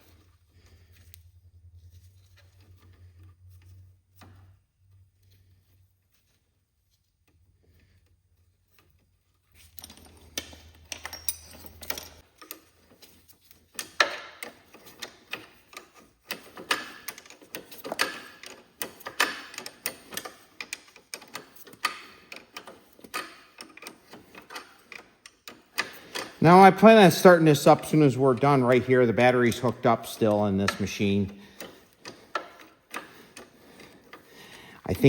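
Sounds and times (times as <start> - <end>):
hand tools clicking and clanking: 8.8 - 35.0.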